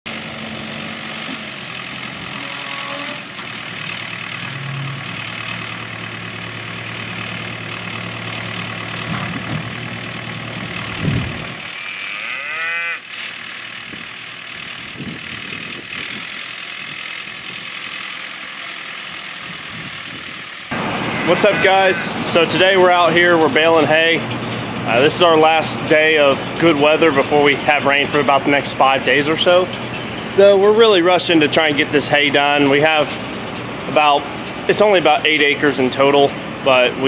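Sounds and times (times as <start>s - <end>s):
low engine hum: 0.1s - 11.9s, 13.1s - 37.0s
cattle mooing: 2.3s - 3.3s, 11.6s - 13.2s, 20.7s - 23.1s.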